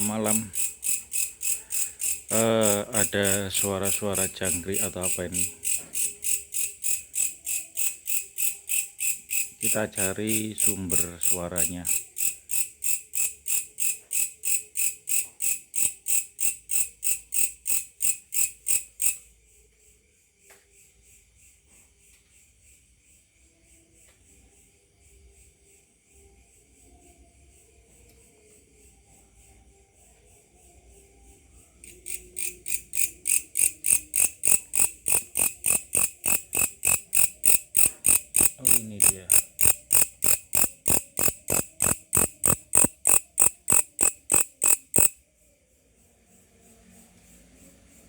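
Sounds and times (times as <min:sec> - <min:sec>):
grasshopper chirping: 0:00.0 - 0:19.3, 0:31.8 - 0:45.2.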